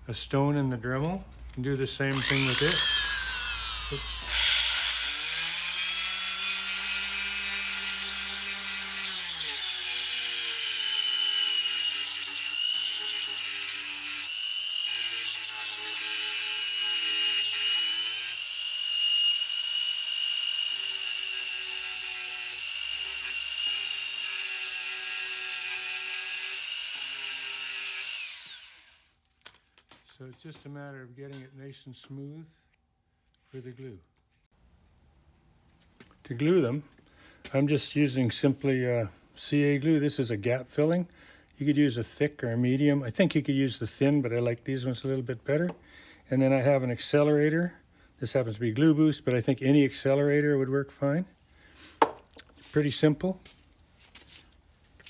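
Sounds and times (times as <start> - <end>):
rotary tool grinding whine: 2.1 - 29.0.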